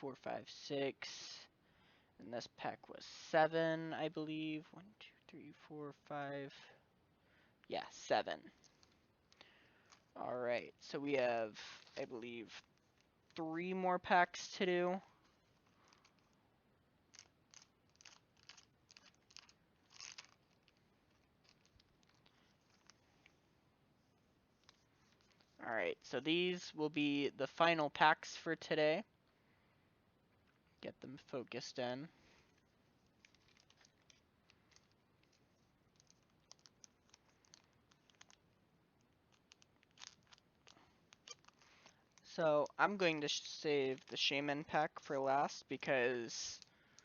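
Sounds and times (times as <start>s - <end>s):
packets being handled: 8.4s - 10.2s, 15.0s - 26.2s, 32.2s - 42.8s
foil wrappers crinkling: 17.1s - 23.3s, 32.3s - 42.4s.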